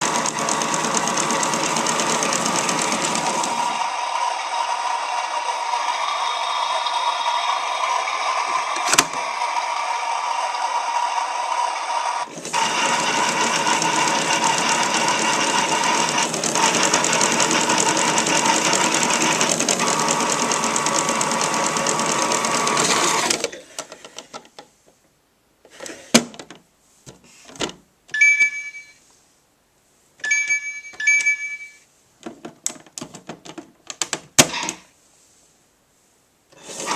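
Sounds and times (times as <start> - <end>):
toy washing machine sound effects: 0.0 - 23.7
short high beeps: 28.2 - 29.0, 30.2 - 31.8.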